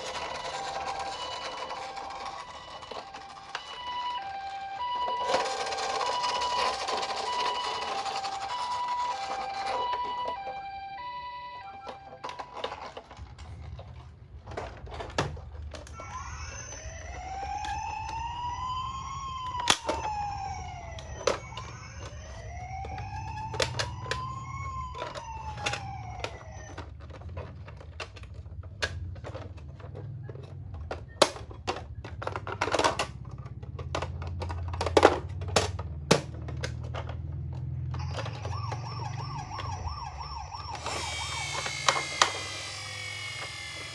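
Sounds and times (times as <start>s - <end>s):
toy siren: 0.0s - 13.4s, 15.9s - 27.9s, 36.6s - 43.9s
toy siren wailing: 0.0s - 13.4s, 15.8s - 27.8s, 37.6s - 43.9s
toy cars rolling: 0.0s - 43.9s.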